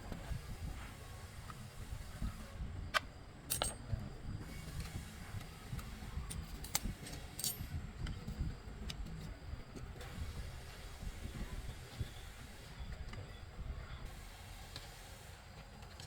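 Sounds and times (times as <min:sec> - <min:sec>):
metal tools clinking: 0:03.5 - 0:04.0, 0:06.3 - 0:07.7.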